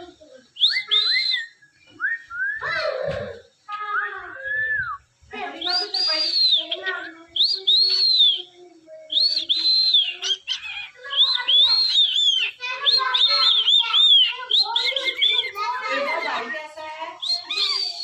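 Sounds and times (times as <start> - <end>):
cockatiel whistling: 0.6 - 2.6, 5.6 - 8.5, 9.1 - 16.6, 17.2 - 18.0
bird chattering: 5.4 - 8.4, 9.1 - 18.0.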